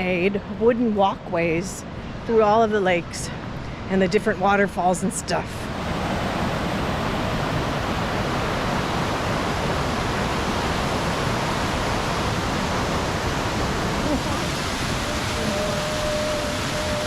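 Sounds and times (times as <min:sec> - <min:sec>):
waterfall rushing: 0:05.8 - 0:17.0.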